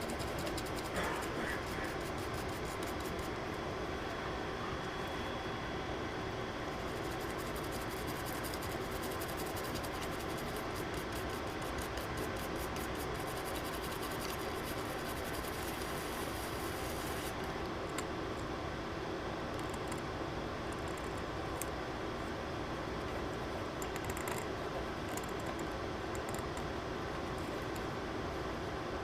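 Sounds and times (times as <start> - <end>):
small tool scratching circuit board: 0.0 - 3.3, 6.9 - 17.3
steady fan hum: 0.0 - 29.0.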